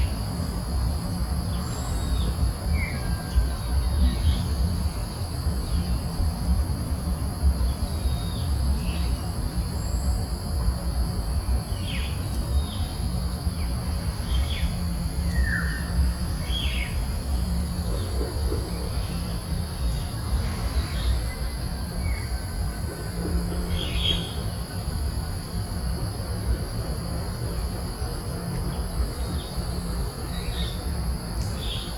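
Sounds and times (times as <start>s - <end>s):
high-pitched insect drone: 7.1s - 31.9s.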